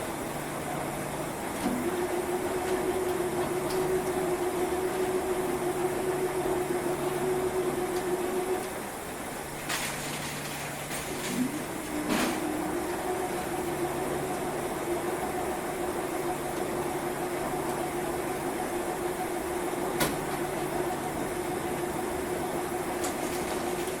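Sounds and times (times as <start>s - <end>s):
washing machine spinning: 0.0s - 24.0s.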